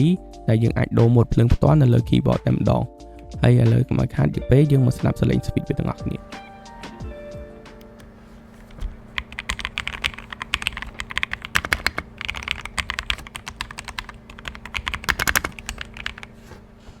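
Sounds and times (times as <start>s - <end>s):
mechanical keyboard typing: 8.7s - 16.6s.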